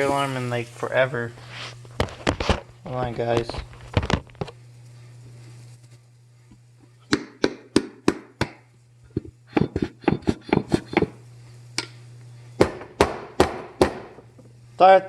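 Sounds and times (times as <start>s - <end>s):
steady low hum: 0.0s - 15.0s
loud sharp knocks: 12.6s - 14.2s.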